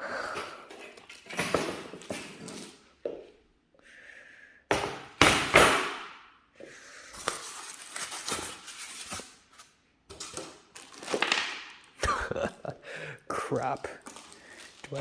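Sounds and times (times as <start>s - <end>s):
packaging rustling and scraping: 0.9s - 2.9s, 7.1s - 12.0s, 13.5s - 15.0s.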